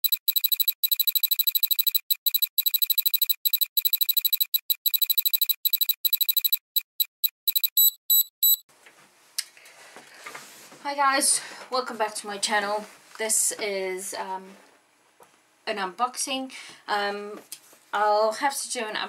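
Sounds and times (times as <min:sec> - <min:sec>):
rapid high-pitched electronic beeping: 0:00.0 - 0:08.6
faint room noise: 0:08.7 - 0:19.0.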